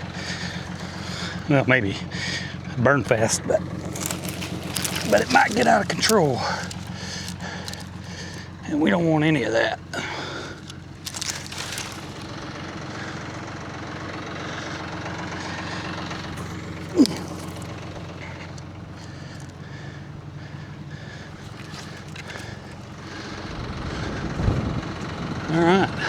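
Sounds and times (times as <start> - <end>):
clicks and rustling: 0.0 - 1.4, 3.0 - 8.7, 10.1 - 12.8, 16.1 - 19.7, 20.8 - 23.3
tractor engine idling: 0.0 - 26.0.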